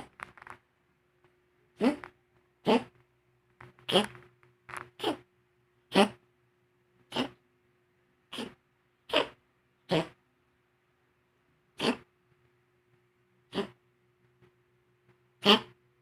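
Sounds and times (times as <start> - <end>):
pet sneezing: 7.1 - 7.4, 8.3 - 10.2, 11.8 - 12.1, 15.4 - 15.7.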